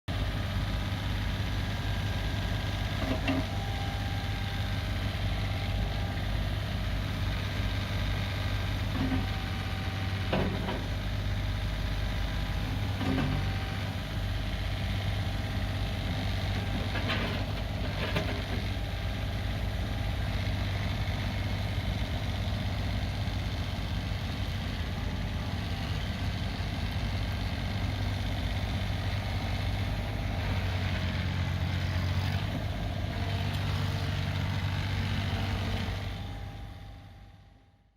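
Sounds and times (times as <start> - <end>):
diesel engine running: 0.1 - 37.7
machine clunks and knocks: 10.3 - 10.9.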